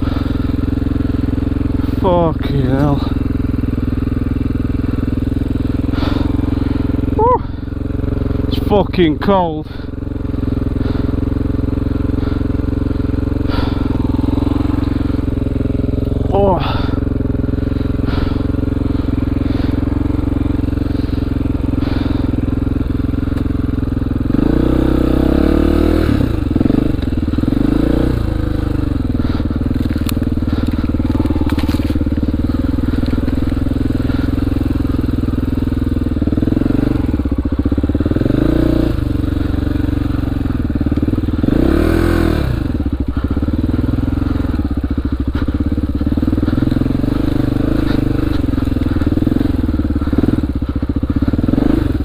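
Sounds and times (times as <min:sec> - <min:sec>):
motorcycle engine revving: 0:00.0 - 0:52.0.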